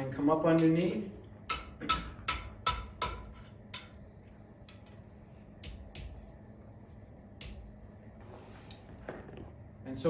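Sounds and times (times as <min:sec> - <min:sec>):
hammer tapping iron on anvil: 0:01.4 - 0:04.9, 0:05.6 - 0:06.4, 0:07.4 - 0:07.8.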